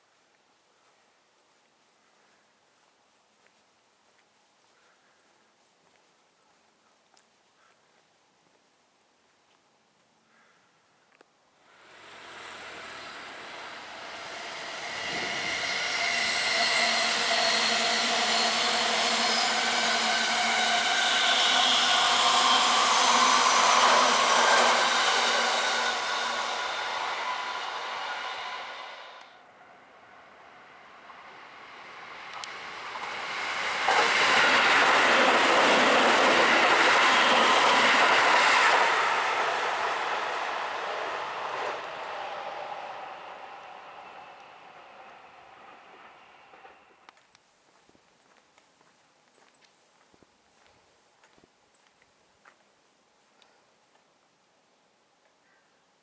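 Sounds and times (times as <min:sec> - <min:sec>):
steady whining tones: 0:11.7 - 0:47.1
train rumbling: 0:11.7 - 0:47.2.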